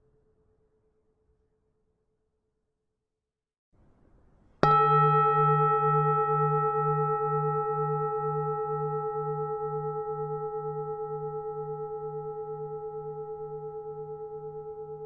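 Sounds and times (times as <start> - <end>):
temple bell ringing: 4.6 - 15.0.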